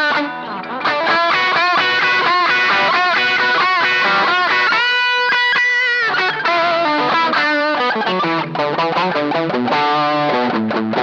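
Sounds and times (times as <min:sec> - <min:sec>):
electric guitar lead line: 0:00.0 - 0:11.0.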